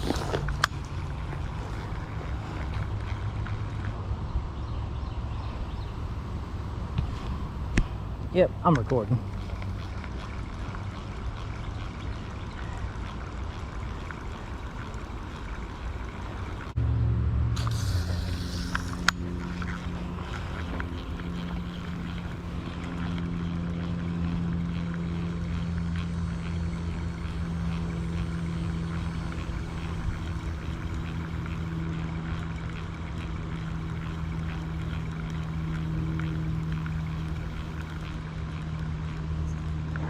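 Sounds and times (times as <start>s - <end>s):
low engine-like drone: 0.0s - 40.0s
low rumble: 0.0s - 40.0s
brief hiss: 17.6s - 19.2s.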